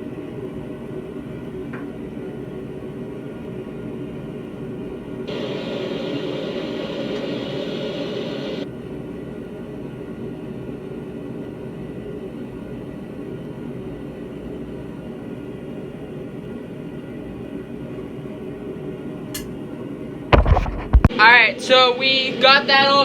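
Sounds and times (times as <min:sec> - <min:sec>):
loud hiss: 0:05.3 - 0:08.6.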